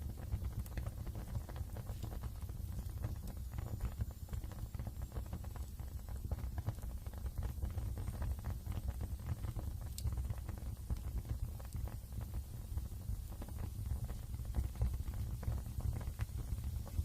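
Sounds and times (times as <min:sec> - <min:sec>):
fire pop: 0:00.0 - 0:17.0
wood fire crackling: 0:00.0 - 0:17.0.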